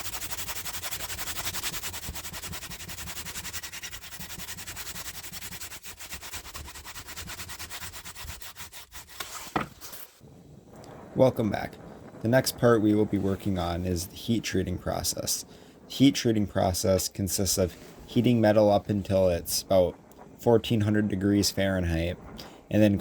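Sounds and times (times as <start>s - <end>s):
abrasive rasping on steel: 0.0s - 9.5s.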